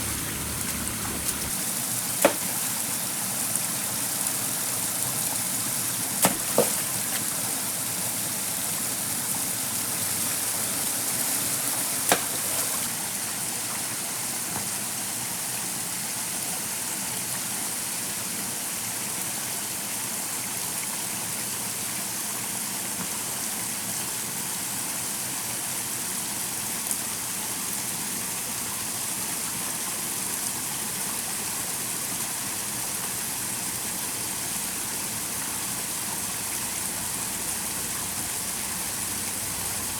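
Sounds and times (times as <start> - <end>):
stream water rushing: 0.0 - 15.2
sharp knocks: 2.2 - 2.6, 6.2 - 7.2, 12.1 - 12.8.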